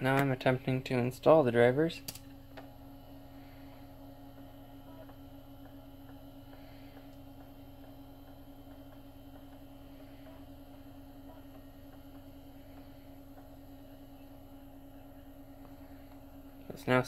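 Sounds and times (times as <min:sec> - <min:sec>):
computer equipment hum: 0:00.0 - 0:17.0.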